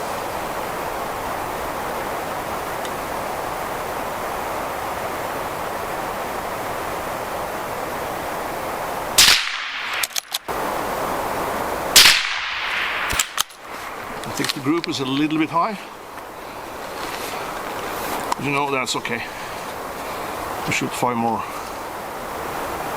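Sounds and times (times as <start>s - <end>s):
background hiss: 0.0s - 22.9s
suppressed rifle shots: 9.2s - 10.5s, 12.0s - 13.6s.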